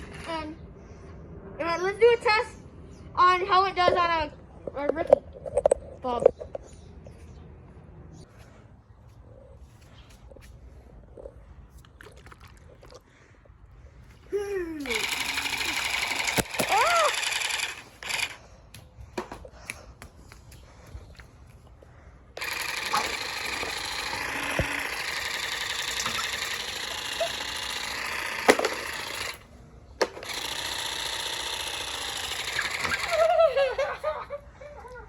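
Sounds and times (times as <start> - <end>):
short wavering cry: 14.3 - 17.5, 26.0 - 27.6
water blaster pump motor: 14.8 - 18.4, 22.4 - 34.1.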